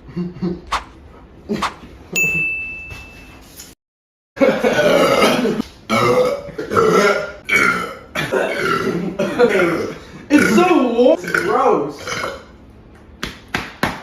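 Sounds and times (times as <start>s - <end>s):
man belching loudly: 4.7s - 12.6s.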